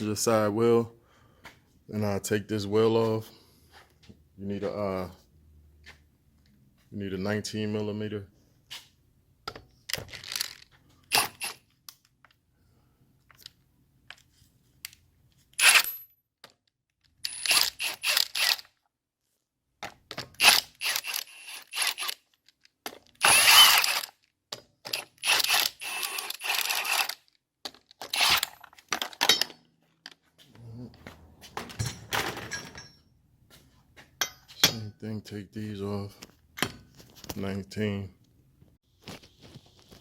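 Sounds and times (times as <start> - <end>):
power tool loosening lug nuts: 10.1 - 11.7, 15.6 - 15.9, 17.2 - 18.8, 20.3 - 22.2, 23.1 - 24.2, 24.8 - 27.3, 28.0 - 29.2.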